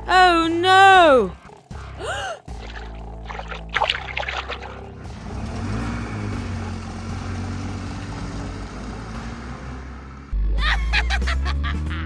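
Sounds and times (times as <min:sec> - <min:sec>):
cartoon truck engine: 0:04.7 - 0:12.0.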